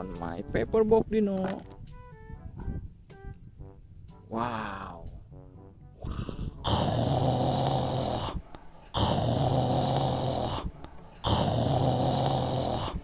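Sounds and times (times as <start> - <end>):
dinosaur roar: 6.0 - 13.0.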